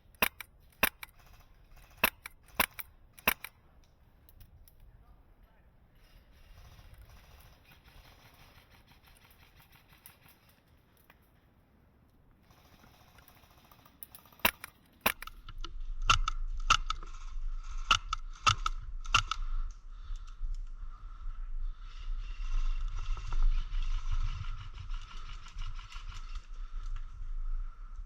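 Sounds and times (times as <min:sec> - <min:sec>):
airsoft gun shots snapping: 0:00.2 - 0:01.1, 0:02.0 - 0:03.5, 0:14.4 - 0:15.4.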